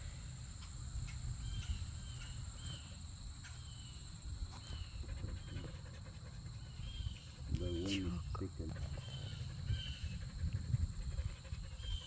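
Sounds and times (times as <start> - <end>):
high insect trill: 0.0 - 12.0
bird chirping: 6.5 - 10.2.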